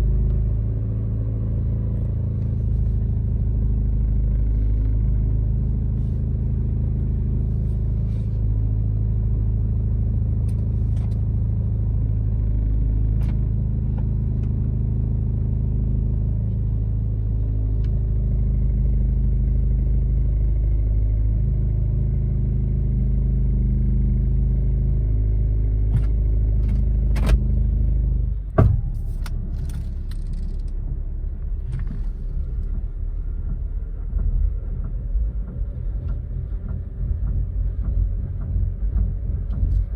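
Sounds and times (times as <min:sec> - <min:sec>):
car rumbling while moving: 0:00.0 - 0:39.9
sharp knocks from car: 0:28.6 - 0:29.3.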